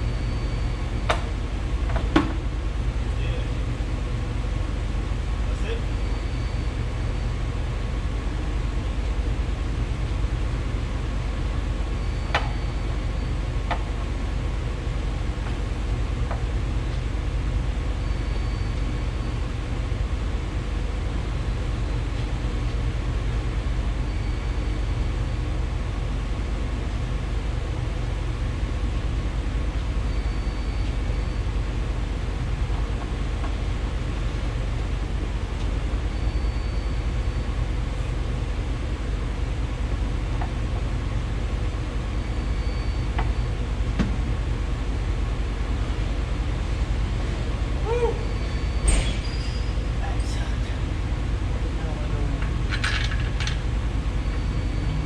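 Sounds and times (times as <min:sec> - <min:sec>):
low rumbling with hiss: 0:00.0 - 0:55.0
faint high beep: 0:05.9 - 0:06.9, 0:36.2 - 0:37.1.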